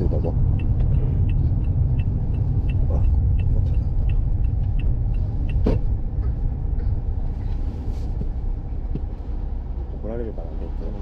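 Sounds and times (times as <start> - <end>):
car interior rumble: 0.0 - 11.0
light regular ticking: 0.2 - 7.2.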